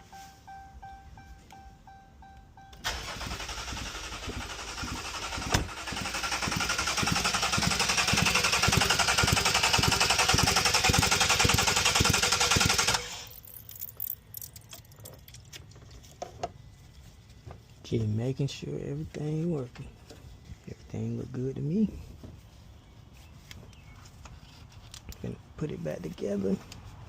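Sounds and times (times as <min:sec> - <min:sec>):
engine cranking on starter: 0:02.7 - 0:13.4.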